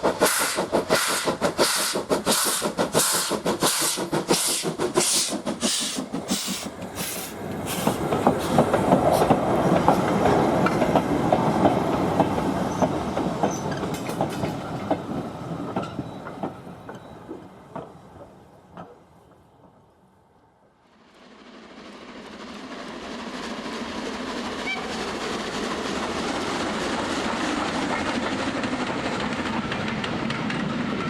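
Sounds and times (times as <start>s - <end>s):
steam locomotive exhaust beats: 0.0s - 15.1s
train wheel clicks: 0.0s - 19.9s, 27.0s - 31.0s.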